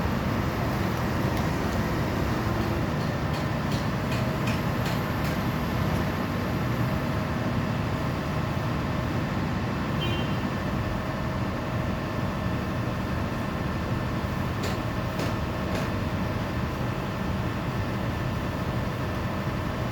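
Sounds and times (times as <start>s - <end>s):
excavator diesel engine running: 0.0s - 9.0s.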